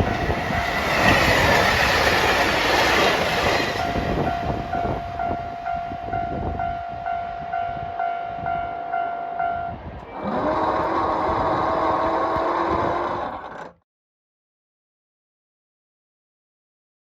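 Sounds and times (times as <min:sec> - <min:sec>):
level-crossing alarm bell ringing: 0:00.0 - 0:09.9.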